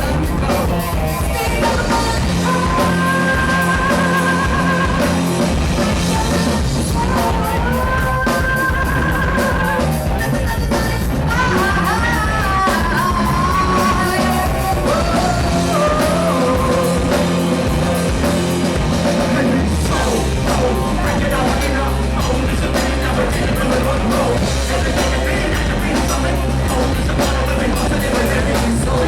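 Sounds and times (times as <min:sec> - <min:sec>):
drums: 0:00.0 - 0:29.0
heavy bass line: 0:00.0 - 0:29.0
live rock band: 0:00.0 - 0:29.0
person singing: 0:00.0 - 0:29.0.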